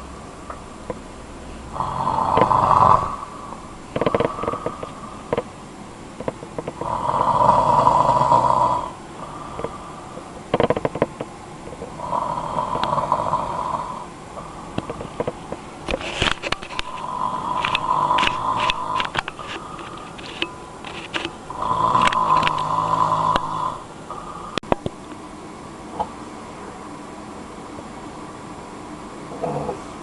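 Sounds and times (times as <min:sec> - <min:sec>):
man snoring: 0:01.6 - 0:05.4, 0:06.6 - 0:10.8, 0:11.9 - 0:15.3, 0:16.4 - 0:20.2, 0:21.5 - 0:24.6, 0:29.3 - 0:30.0.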